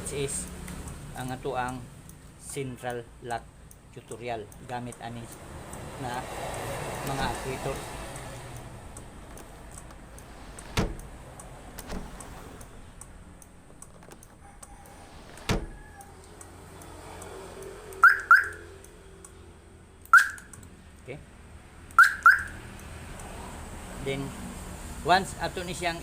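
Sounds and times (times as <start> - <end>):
door lock actuator clunks: 7.0 - 16.1
car alarm siren chirps: 18.0 - 18.6, 22.0 - 22.6.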